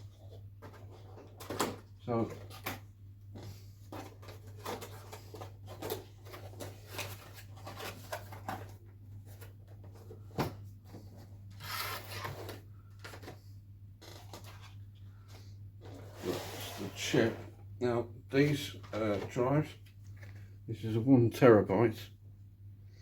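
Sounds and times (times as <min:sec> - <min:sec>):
packaging rustling and clicking: 0:00.6 - 0:10.5, 0:14.0 - 0:14.8.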